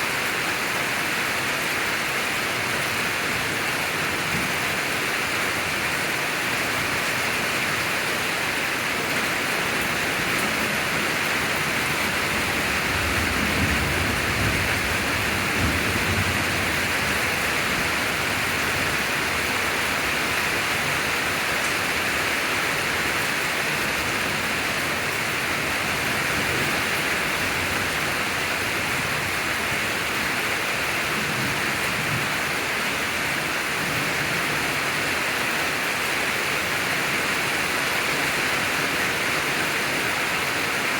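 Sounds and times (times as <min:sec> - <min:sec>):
heavy rain hissing: 0:00.0 - 0:40.9
thunder rumbling: 0:11.5 - 0:19.9.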